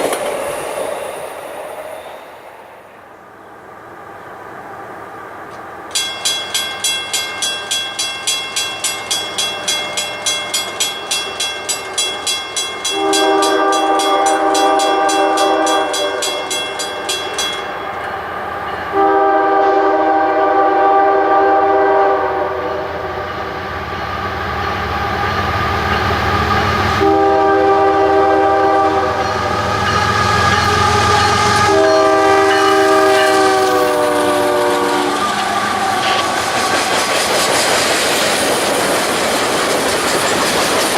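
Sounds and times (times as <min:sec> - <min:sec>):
train rumble: 0:00.0 - 0:40.9
crossing warning bell ringing: 0:05.9 - 0:20.0, 0:22.7 - 0:24.0, 0:24.6 - 0:37.0
diesel locomotive horn: 0:12.8 - 0:16.5, 0:18.9 - 0:23.5, 0:26.4 - 0:37.0.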